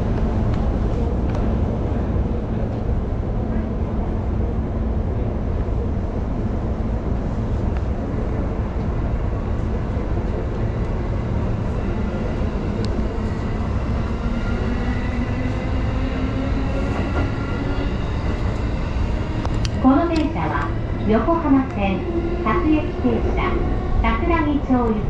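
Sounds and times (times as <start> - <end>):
electric train rumbling: 0.0 - 25.0.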